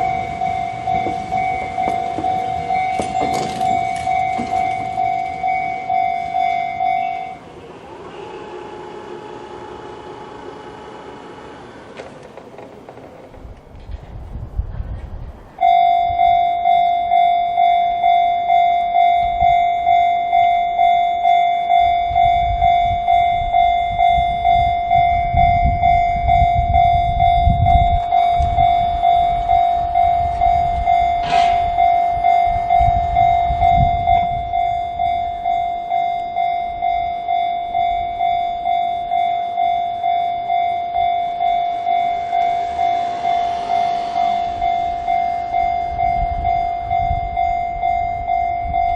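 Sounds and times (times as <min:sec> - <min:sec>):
level crossing warning bell: 0:00.0 - 0:13.9, 0:15.6 - 0:48.9
train rumbling: 0:00.0 - 0:48.9.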